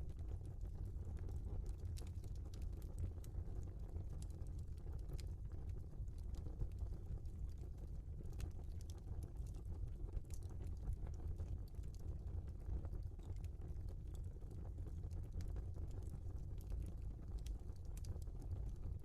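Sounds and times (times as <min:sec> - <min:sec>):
log fire crackling: 0:04.3 - 0:19.0.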